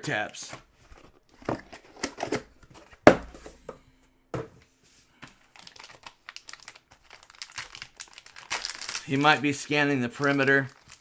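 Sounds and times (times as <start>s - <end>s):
packaging crinkling and rustling: 5.2s - 11.0s.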